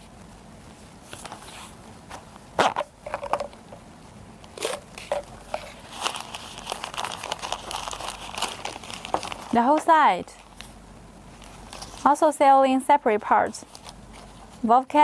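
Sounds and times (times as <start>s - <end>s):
packaging rustling: 4.6s - 12.2s, 13.2s - 14.7s.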